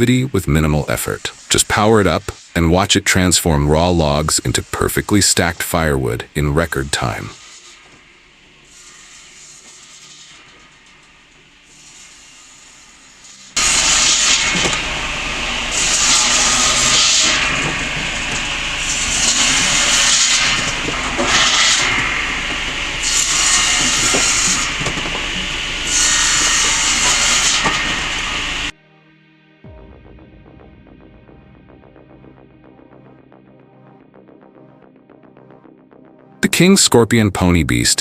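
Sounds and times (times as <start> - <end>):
circular saw cutting logs: 0.0 - 8.0, 8.6 - 28.7.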